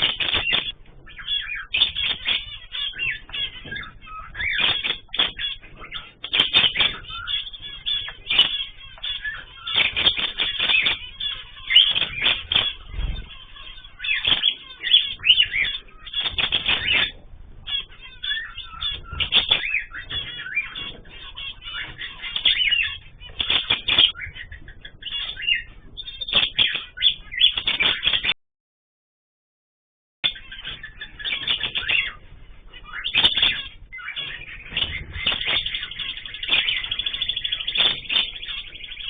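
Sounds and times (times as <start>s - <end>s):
small birds chirping: 0.0s - 28.4s, 30.2s - 39.0s.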